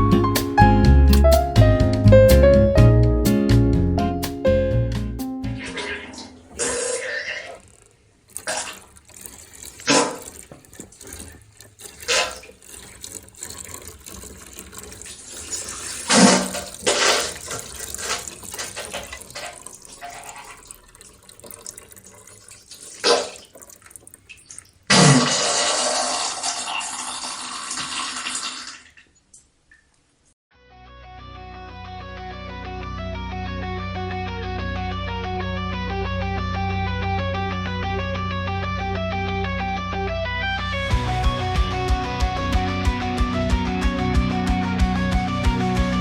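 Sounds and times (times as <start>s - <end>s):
liquid running and splashing: 5.7s - 29.2s
steady rush of liquid: 6.0s - 28.9s.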